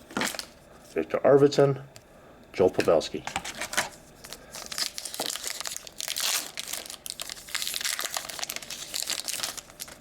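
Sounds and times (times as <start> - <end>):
wrapper crinkling and tearing: 4.2 - 10.0.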